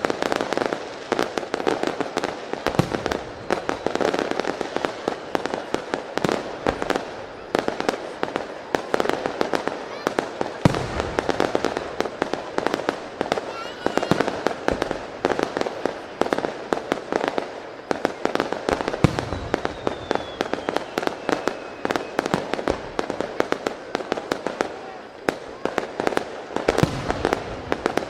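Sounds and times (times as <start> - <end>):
firework crackle: 0.0 - 28.0
faint descending whistle: 19.2 - 22.3.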